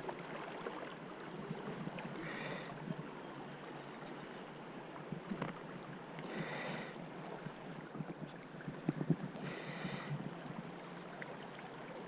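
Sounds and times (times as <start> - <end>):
river water rushing: 0.0 - 5.1, 5.7 - 8.6
small clicks and knocks: 5.3 - 5.6.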